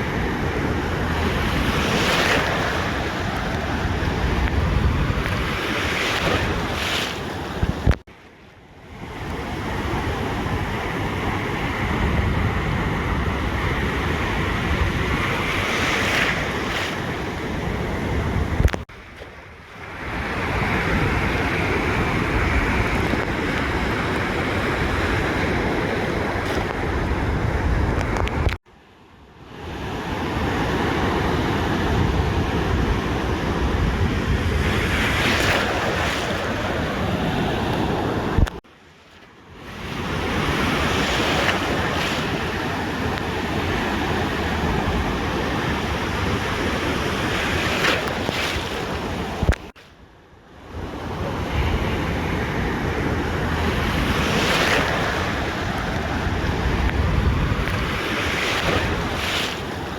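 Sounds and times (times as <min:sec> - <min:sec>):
wind buffeting microphone: 0:00.0 - 0:08.0, 0:09.0 - 0:28.6, 0:30.7 - 0:38.6, 0:50.8 - 0:59.9
ocean surf washing on beach: 0:00.0 - 0:59.9.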